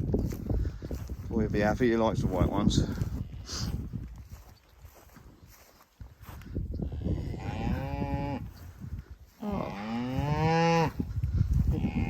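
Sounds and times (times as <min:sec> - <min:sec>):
cow mooing: 0:07.0 - 0:08.5, 0:09.4 - 0:11.0.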